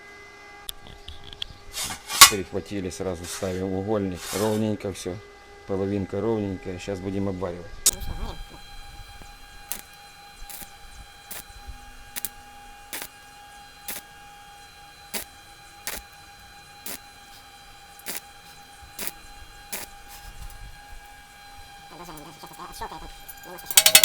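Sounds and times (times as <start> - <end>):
welding whine: 0.7 - 2.5, 5.5 - 24.0
slag cracking clicks: 7.9 - 24.0.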